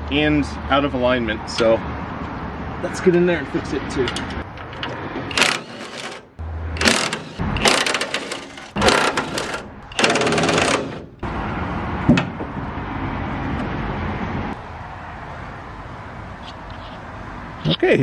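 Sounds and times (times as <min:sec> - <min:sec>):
impact driver rattling: 0:05.3 - 0:11.2.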